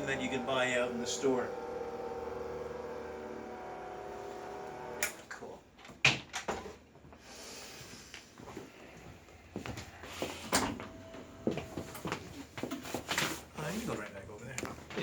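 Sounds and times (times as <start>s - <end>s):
electric massage machine humming: 0.0s - 5.2s.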